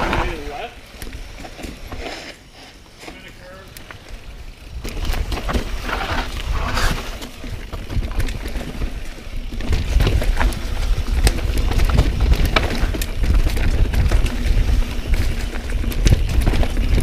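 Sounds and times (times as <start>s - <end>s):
bike chain and frame rattling: 0.0s - 17.0s
bike tyres rumbling over dirt: 0.0s - 17.0s
wind rumbling on microphone: 4.2s - 17.0s.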